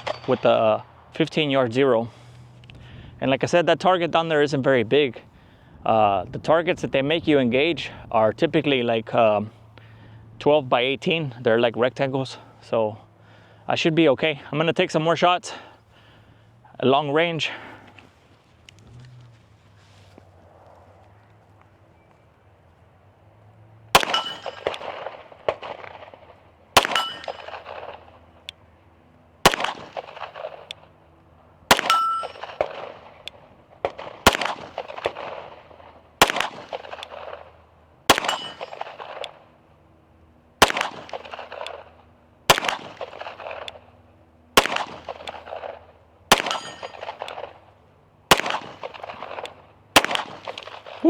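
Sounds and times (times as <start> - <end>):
steel target ringing: 0.0 - 0.6, 24.0 - 24.7, 26.8 - 27.6, 31.7 - 32.6, 38.1 - 39.0, 46.4 - 47.1
pistol shots with echo: 0.0 - 1.0, 23.9 - 28.3, 29.4 - 30.8, 31.7 - 39.4, 40.6 - 41.9, 42.5 - 43.8, 44.6 - 47.6, 48.3 - 51.0.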